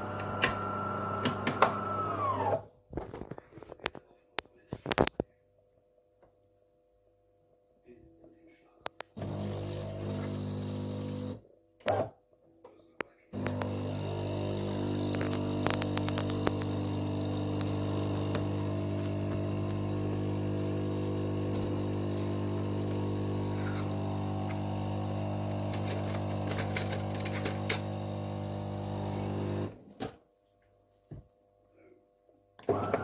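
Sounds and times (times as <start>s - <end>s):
coffee machine humming: 0.0s - 2.6s, 9.2s - 11.4s, 13.4s - 29.8s, 32.6s - 33.0s
sharp rattling clicks: 25.7s - 27.9s.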